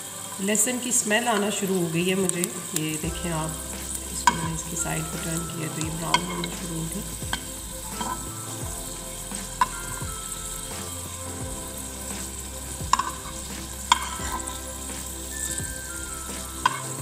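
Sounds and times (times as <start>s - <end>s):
garlic sizzling in oil: 0.0s - 17.0s.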